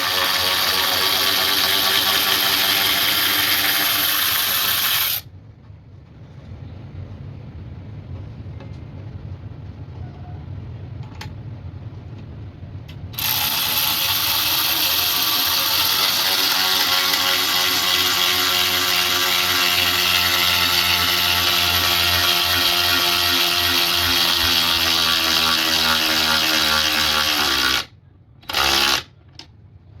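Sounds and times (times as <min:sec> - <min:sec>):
power tool motor whining: 0:00.0 - 0:05.2, 0:13.2 - 0:29.1.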